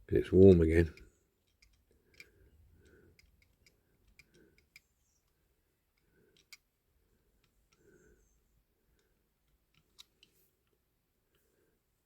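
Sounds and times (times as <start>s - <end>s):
faint small clicks: 0.9s - 6.7s, 7.3s - 8.0s, 8.9s - 11.5s.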